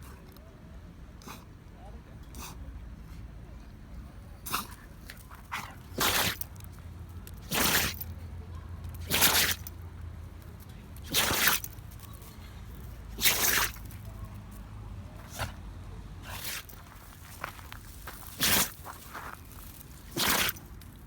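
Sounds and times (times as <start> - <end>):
dog sneezing: 4.5 - 4.8, 5.5 - 6.4, 7.5 - 8.0, 9.0 - 9.7, 11.1 - 11.7, 13.2 - 14.0, 18.4 - 18.8, 20.1 - 20.6.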